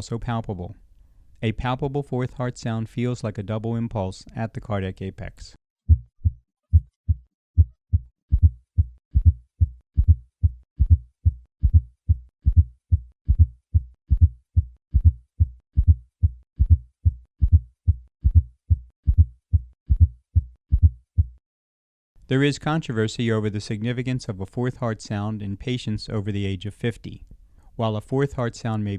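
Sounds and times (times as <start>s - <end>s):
heartbeat through stethoscope: 5.9s - 21.4s.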